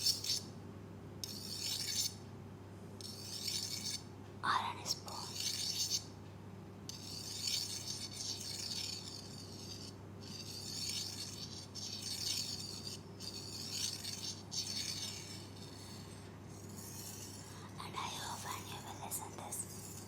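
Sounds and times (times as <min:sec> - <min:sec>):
scratchy rubbing and rattling: 0:00.0 - 0:00.4, 0:01.2 - 0:02.2, 0:03.0 - 0:04.0, 0:05.1 - 0:06.1, 0:06.9 - 0:17.6
steady low hum: 0:00.0 - 0:20.0.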